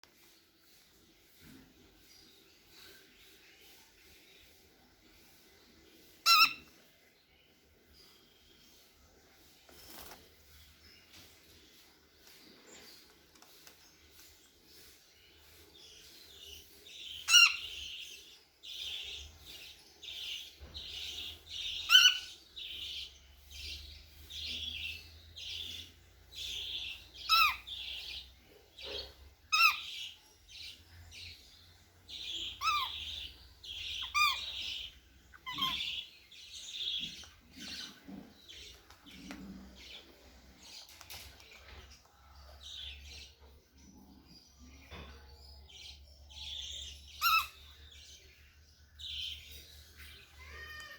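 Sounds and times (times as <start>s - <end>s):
cockatiel chirping: 6.2s - 6.7s, 21.7s - 23.0s, 26.4s - 28.2s, 29.5s - 30.1s, 32.2s - 36.1s, 47.2s - 47.6s
cockatiel sharp calls: 6.2s - 6.7s, 27.2s - 28.0s, 28.9s - 30.1s, 32.3s - 36.0s, 47.2s - 47.6s.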